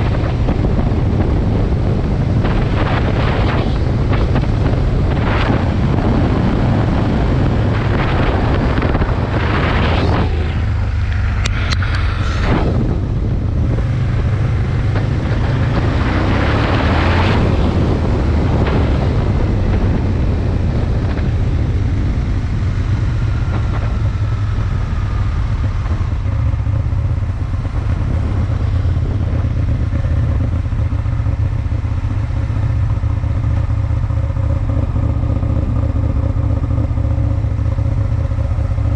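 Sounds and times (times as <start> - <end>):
rushing noise: 0.0 - 24.0
motorcycle engine rumbling: 0.0 - 38.9.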